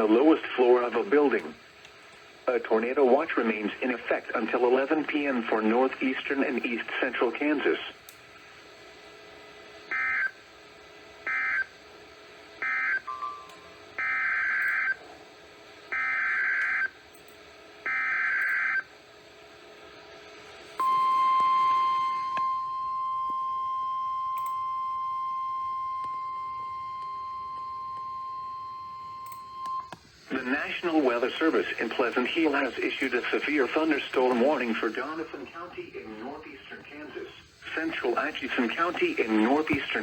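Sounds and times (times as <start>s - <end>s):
piercing weather radio alarm tone: 9.9s - 10.4s, 11.2s - 11.7s, 12.6s - 13.2s, 14.0s - 15.0s, 15.9s - 17.0s, 17.9s - 18.9s.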